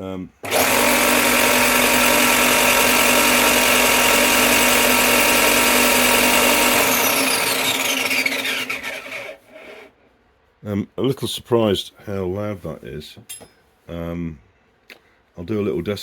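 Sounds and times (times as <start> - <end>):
bench sander running: 0.4 - 9.9.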